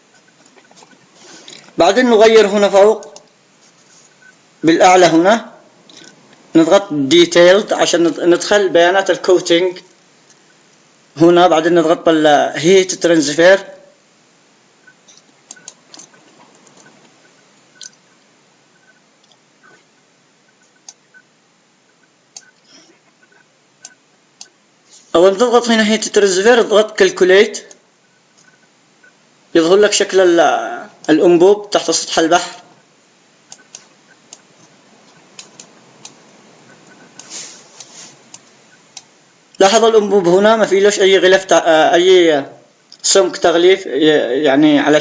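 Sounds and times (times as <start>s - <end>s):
low steady hiss: 0.0s - 45.0s
computer mouse clicks: 15.1s - 17.2s, 20.6s - 21.0s, 22.3s - 24.6s, 33.5s - 39.1s.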